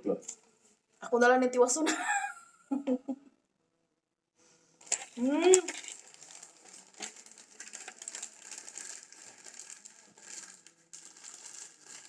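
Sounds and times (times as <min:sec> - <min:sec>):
wrapper crinkling: 0:04.8 - 0:12.0.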